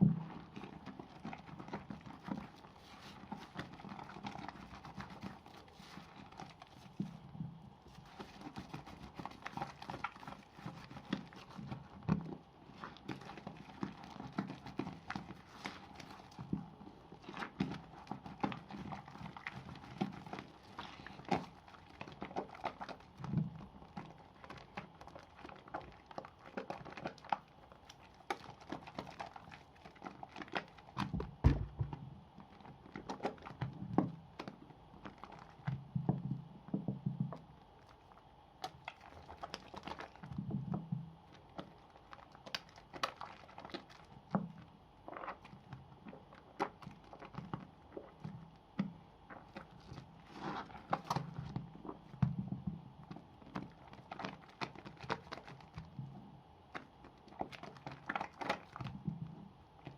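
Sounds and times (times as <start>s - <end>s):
thump: 31.2s - 32.0s.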